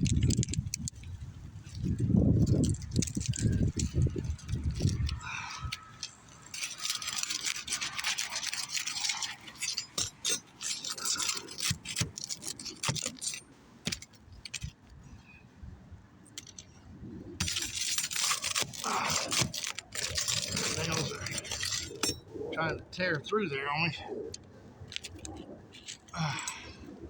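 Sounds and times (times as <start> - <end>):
roof shingles scraping and crackling: 0.0 - 15.3, 17.4 - 27.0.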